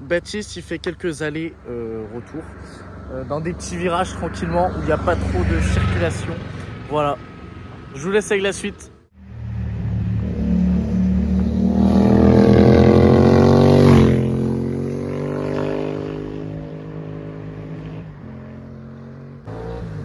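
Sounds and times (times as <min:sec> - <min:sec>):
motorcycle accelerating past: 0:09.2 - 0:20.0.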